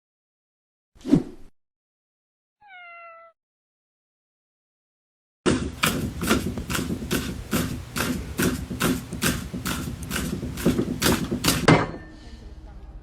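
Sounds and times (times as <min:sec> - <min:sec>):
rapid regular knocking: 0:05.6 - 0:11.7.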